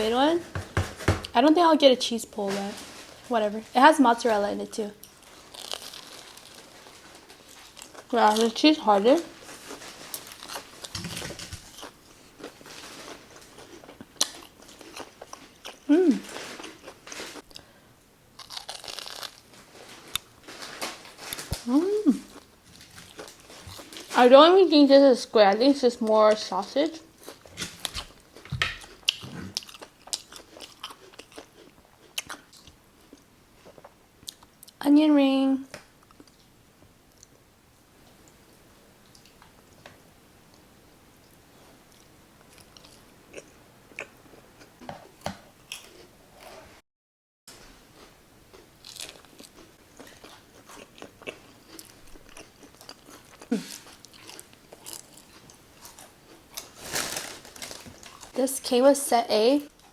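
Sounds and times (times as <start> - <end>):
crunchy chewing: 5.0 - 8.5, 9.4 - 17.7, 18.4 - 24.2, 27.2 - 34.8, 41.2 - 46.6, 47.9 - 58.4.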